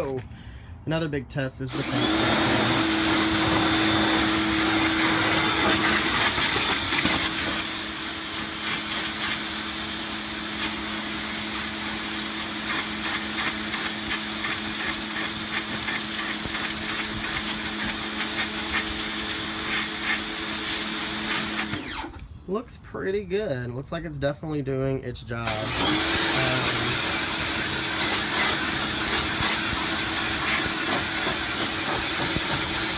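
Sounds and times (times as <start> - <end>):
water jet spraying: 1.7 - 21.7, 25.5 - 32.9
pressure washer pump humming: 1.7 - 22.3, 25.4 - 32.9.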